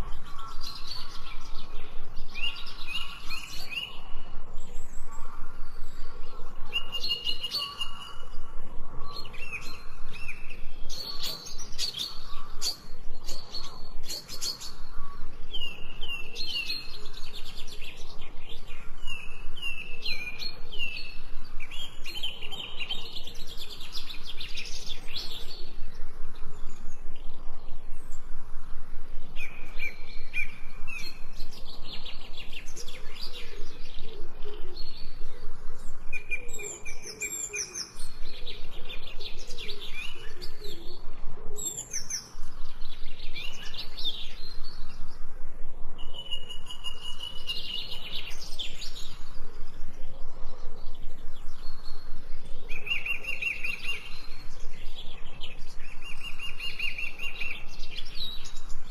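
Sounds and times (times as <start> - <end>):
songbirds chirping and singing: 0.0 - 58.9.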